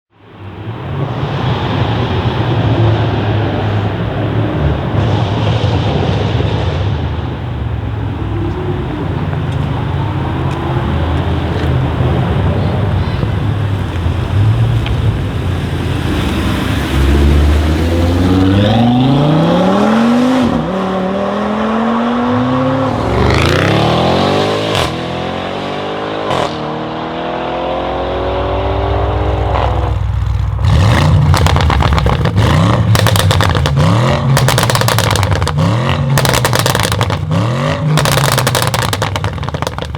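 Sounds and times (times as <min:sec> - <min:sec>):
car engine revving: 0:01.1 - 0:39.9
car engine idling: 0:07.4 - 0:18.3, 0:27.9 - 0:39.9
exhaust pops and crackles: 0:10.4 - 0:16.4, 0:29.1 - 0:39.9.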